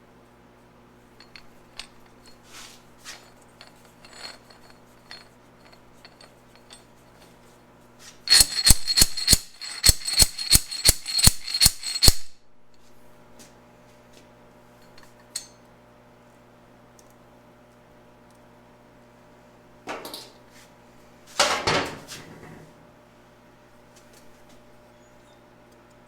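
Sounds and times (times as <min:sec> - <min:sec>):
metal tools clinking: 0:01.2 - 0:07.3, 0:08.3 - 0:12.3.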